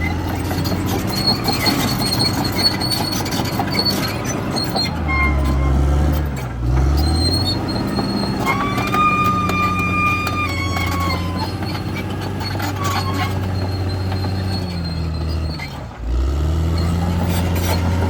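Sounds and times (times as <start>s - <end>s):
bulldozer diesel engine running: 0.0s - 18.0s
steel tracks squealing and clanking: 0.0s - 18.0s.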